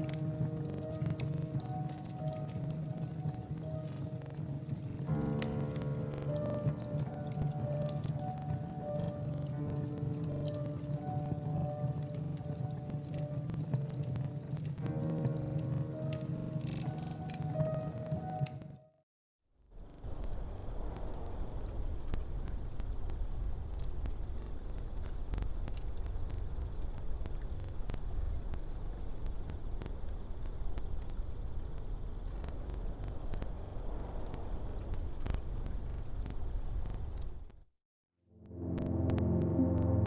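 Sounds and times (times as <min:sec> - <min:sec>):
crickets chirping: 0:19.7 - 0:37.6.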